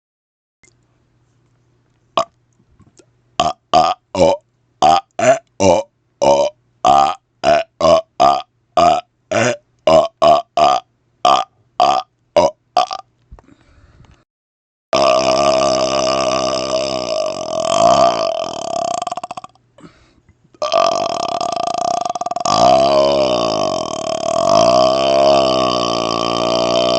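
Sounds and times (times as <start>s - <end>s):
man burping: 3.4s - 13.1s, 15.0s - 20.0s, 20.6s - 26.9s.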